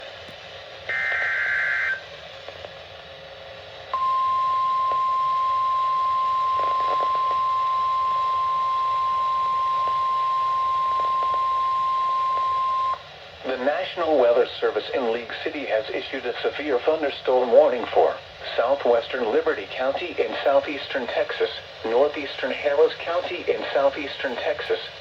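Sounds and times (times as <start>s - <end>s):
faint radio hiss: 0.0s - 25.0s
buzzy digital header tones: 0.9s - 2.0s
steady warning alarm tone: 0.9s - 2.0s, 4.0s - 13.0s.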